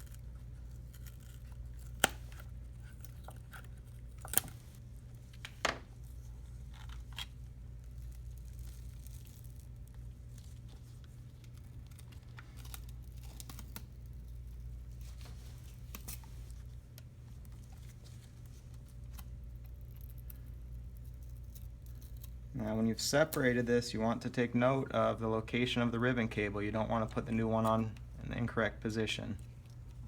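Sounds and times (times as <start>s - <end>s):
adhesive tearing and crackling: 0.0s - 22.6s
steady low hum: 0.0s - 30.0s.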